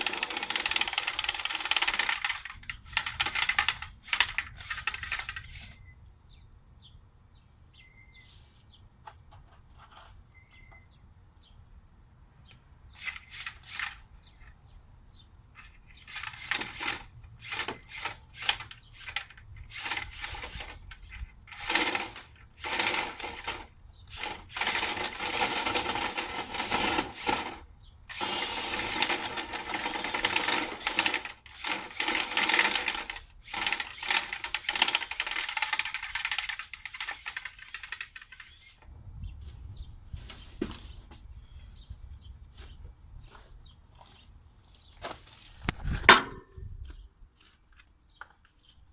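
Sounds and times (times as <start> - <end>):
vent cleaning tool rattling: 0.0 - 5.5, 16.1 - 38.5.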